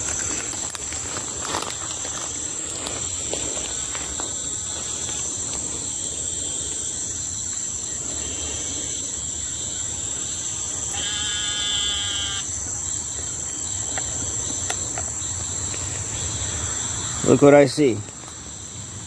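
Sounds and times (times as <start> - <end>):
high-pitched insect chorus: 0.0 - 19.0
animal call of even pitch: 10.9 - 12.5.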